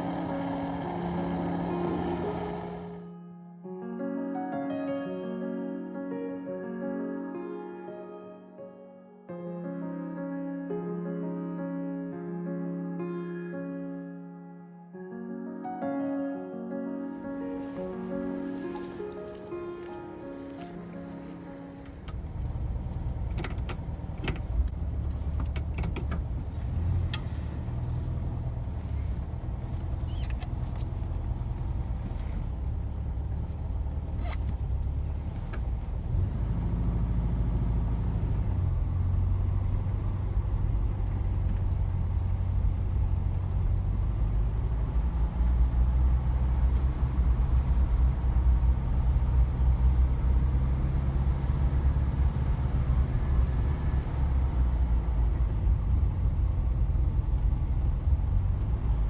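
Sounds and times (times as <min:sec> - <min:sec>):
car engine droning: 0:00.0 - 0:03.1, 0:17.4 - 0:59.0.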